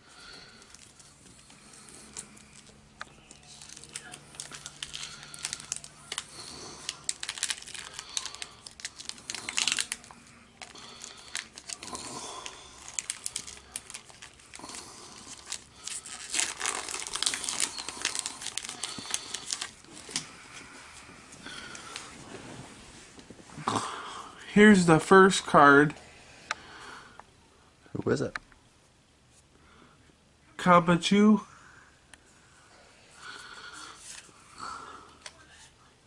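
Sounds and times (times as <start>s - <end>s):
foil wrapper crinkling and tearing: 0.4s - 20.3s.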